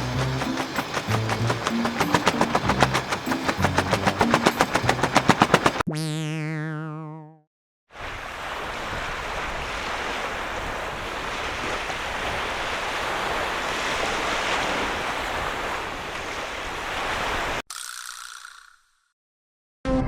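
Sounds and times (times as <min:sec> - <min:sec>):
strong wind rushing: 0:00.0 - 0:05.8
waves washing on shore: 0:00.0 - 0:05.8, 0:08.0 - 0:17.6.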